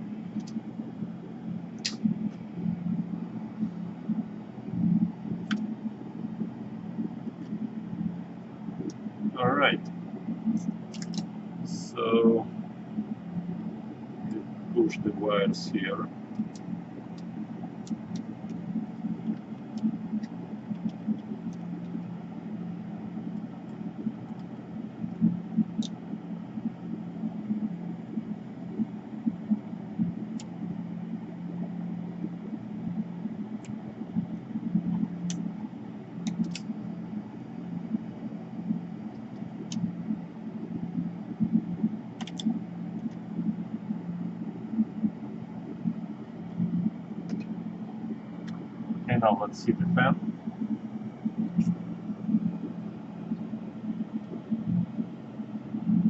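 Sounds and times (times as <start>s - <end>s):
low background hum: 0.0s - 56.0s
light clicks: 10.5s - 11.3s, 36.2s - 36.7s, 42.2s - 43.2s.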